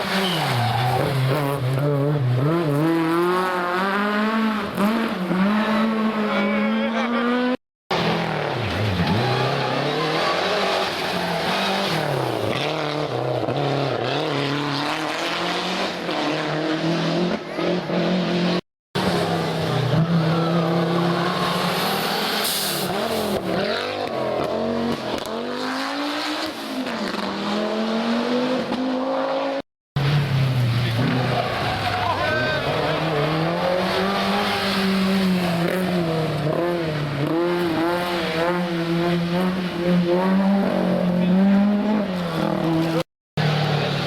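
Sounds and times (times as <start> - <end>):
rally car engines revving: 0.0 - 44.0.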